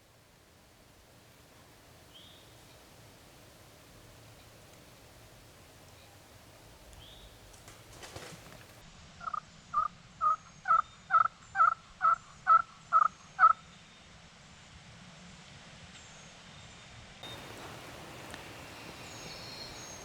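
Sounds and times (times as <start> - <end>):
turkey hen yelping: 17.2 - 20.0.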